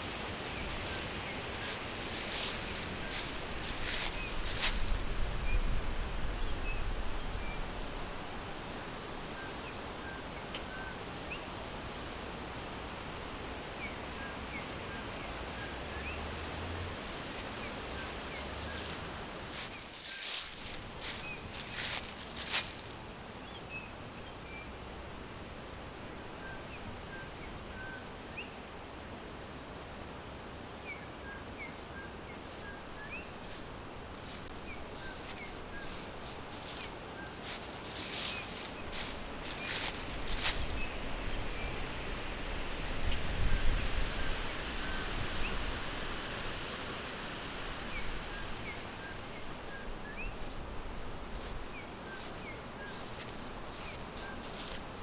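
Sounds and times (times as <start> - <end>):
sharp crackles: 0.0 - 5.1, 16.4 - 23.2, 33.4 - 40.9
small birds chirping: 0.0 - 5.1, 13.6 - 23.6, 30.8 - 41.0, 48.4 - 55.0
wind rustling leaves: 0.0 - 55.0.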